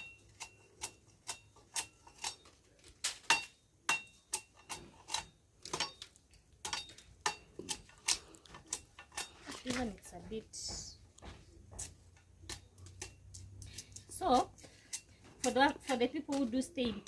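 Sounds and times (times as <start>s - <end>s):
blade chopping sugarcane: 11.7s - 17.0s.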